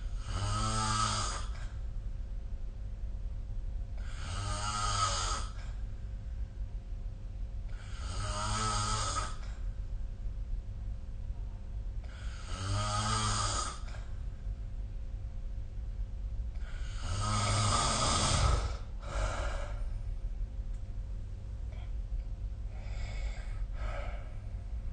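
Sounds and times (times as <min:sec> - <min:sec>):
person snoring: 0:00.2 - 0:01.8, 0:04.0 - 0:05.7, 0:07.7 - 0:09.5, 0:12.0 - 0:14.1, 0:16.6 - 0:19.9.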